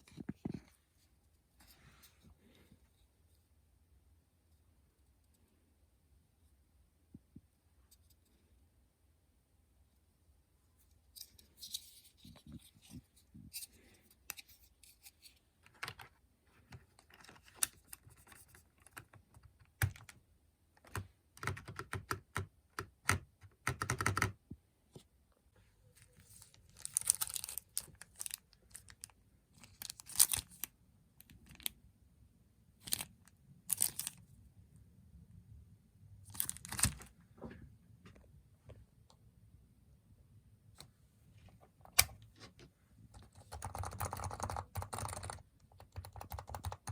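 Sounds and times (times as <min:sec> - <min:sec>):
handling noises and rustling: 0:10.7 - 0:20.2, 0:24.9 - 0:31.7, 0:32.8 - 0:34.4, 0:36.3 - 0:38.8.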